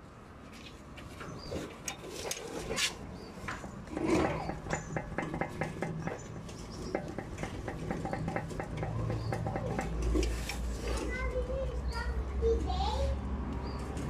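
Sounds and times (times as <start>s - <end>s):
rapid metallic clicking: 3.5s - 10.7s.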